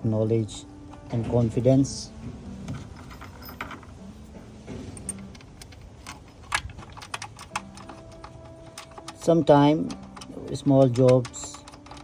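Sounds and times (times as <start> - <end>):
metal tools and bolts clinking: 2.7 - 12.0.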